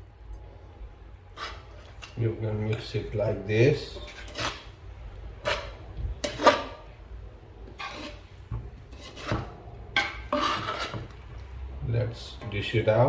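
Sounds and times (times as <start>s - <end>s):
spoon scraping a cooking pot: 1.3s - 7.0s, 7.6s - 11.5s.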